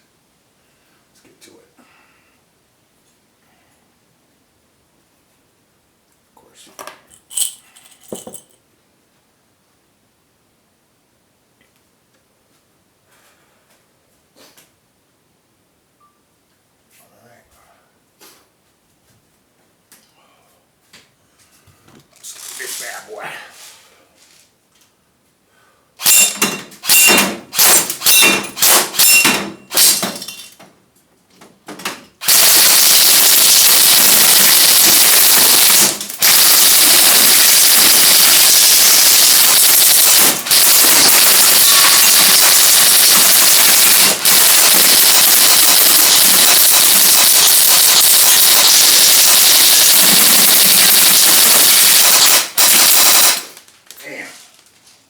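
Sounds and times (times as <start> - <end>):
airsoft gun firing full auto: 26.0 - 30.2, 32.2 - 53.6.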